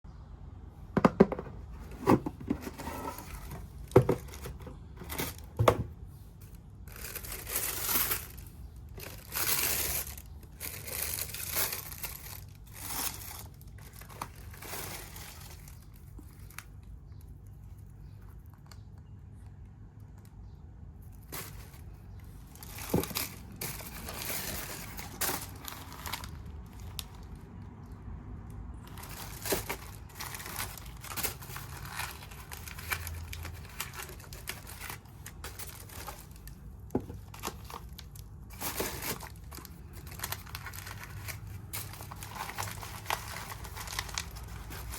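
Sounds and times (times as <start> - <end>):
paper crinkling and tearing: 6.5 - 16.8, 21.2 - 27.4, 28.8 - 44.9.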